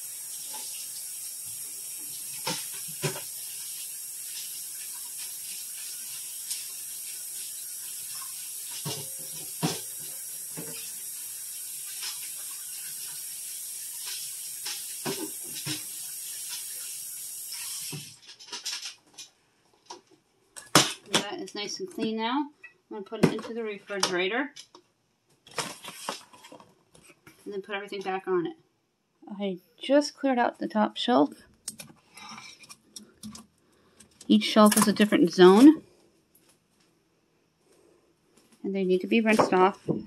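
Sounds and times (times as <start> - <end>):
tap running into sink: 2.0 - 3.4, 8.0 - 11.1, 14.0 - 16.8.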